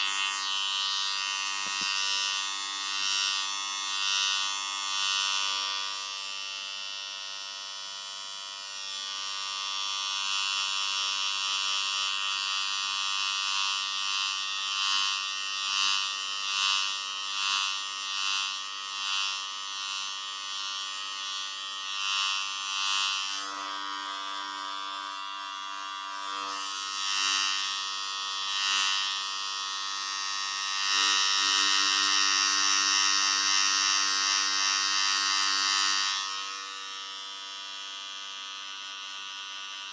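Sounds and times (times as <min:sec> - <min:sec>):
electric hair clippers buzzing: 0:00.0 - 0:39.9.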